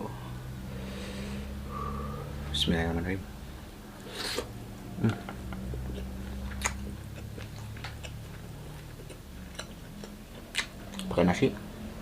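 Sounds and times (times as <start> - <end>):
person chewing food: 4.0 - 11.1.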